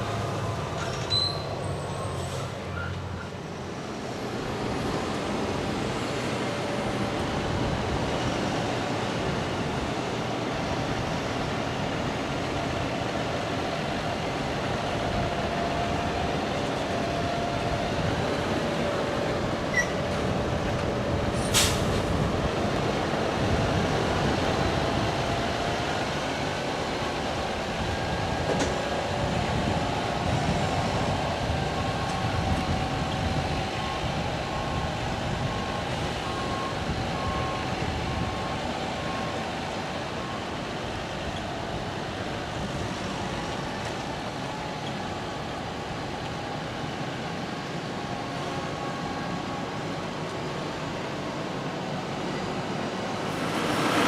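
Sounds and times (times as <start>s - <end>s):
heavy farm machinery running: 52.6s - 54.0s.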